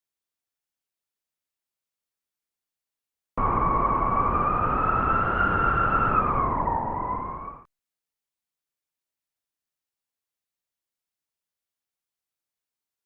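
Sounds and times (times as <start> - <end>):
steady rushing noise: 3.4 - 7.6
wolf howling: 3.4 - 7.7.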